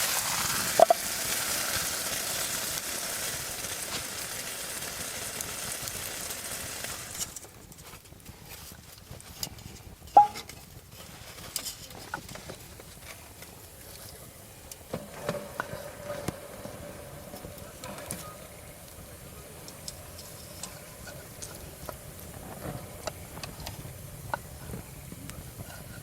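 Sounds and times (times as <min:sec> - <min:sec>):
chicken sizzling in a pan: 0:00.0 - 0:26.0.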